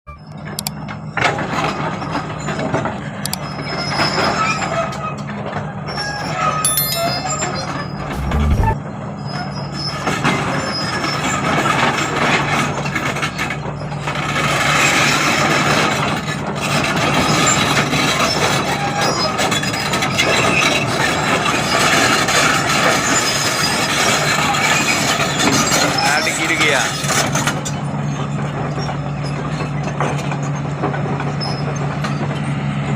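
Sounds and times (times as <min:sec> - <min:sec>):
metallic clatter and scraping: 0:06.7 - 0:08.8.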